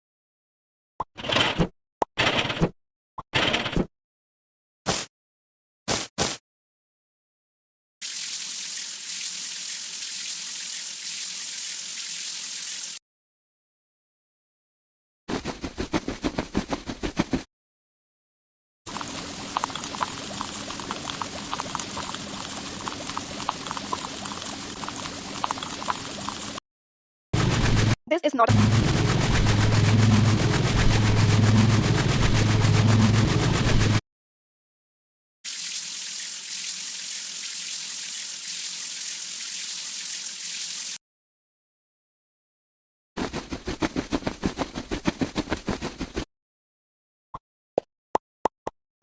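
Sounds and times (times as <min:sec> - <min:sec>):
quick rhythmic liquid strokes: 0:18.9 - 0:26.6, 0:35.5 - 0:41.0
machine humming and rattling: 0:27.4 - 0:34.0
hiss of spraying water: 0:35.5 - 0:41.0.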